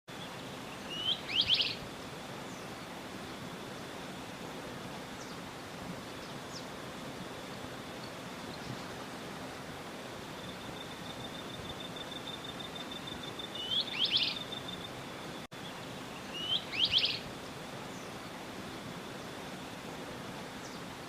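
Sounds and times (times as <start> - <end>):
background hiss: 0.1 - 21.0
small bird chirping calls: 0.2 - 1.8, 10.4 - 17.3.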